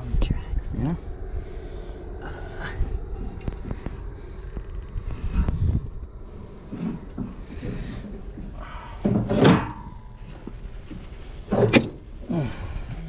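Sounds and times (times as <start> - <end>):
loud metal clunk: 9.1 - 10.1.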